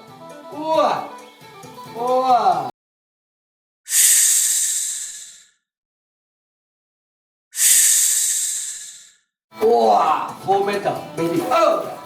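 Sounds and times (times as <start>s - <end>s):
snake hissing: 3.9s - 5.6s, 7.6s - 9.2s.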